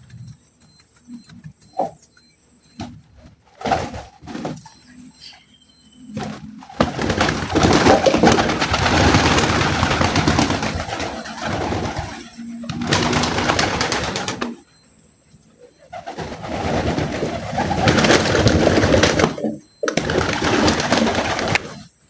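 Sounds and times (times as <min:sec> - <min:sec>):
pigeons cooing: 0:06.1 - 0:14.6, 0:15.8 - 0:21.9
loud rustling: 0:06.2 - 0:14.6.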